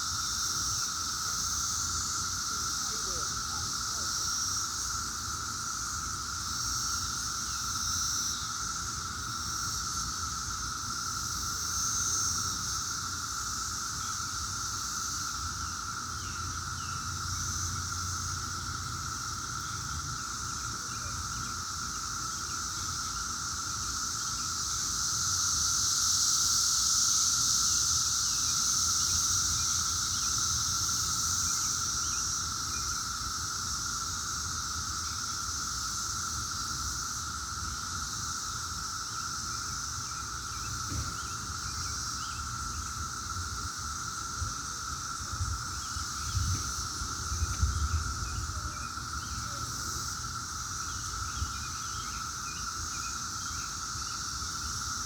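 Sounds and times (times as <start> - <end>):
cicadas droning: 0.0 - 55.0
higher cicada hiss: 0.0 - 55.0.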